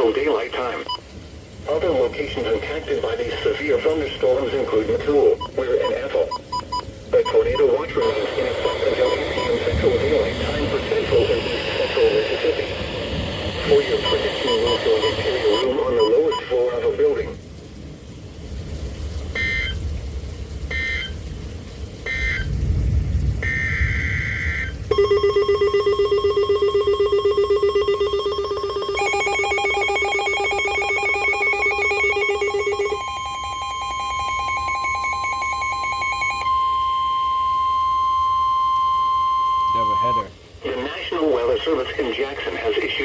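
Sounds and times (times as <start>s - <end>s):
digital data bursts: 1.7s - 17.4s, 19.3s - 19.8s, 22.1s - 22.6s, 23.4s - 43.0s
steady alarm tone: 5.4s - 16.8s, 19.3s - 19.8s, 20.7s - 21.2s, 22.0s - 22.6s, 23.4s - 40.4s
pulsing electronic alert tones: 19.4s - 19.8s, 22.1s - 22.5s, 23.4s - 40.3s.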